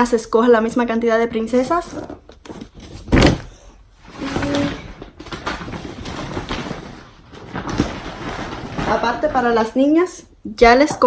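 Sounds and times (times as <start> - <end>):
packaging rustling: 1.9 - 9.9.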